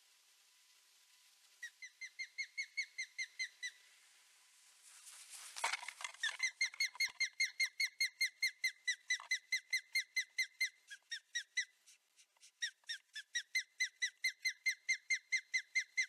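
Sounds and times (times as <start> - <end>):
osprey whistled alarm calls: 1.6 - 3.8
short rustling: 4.8 - 6.5.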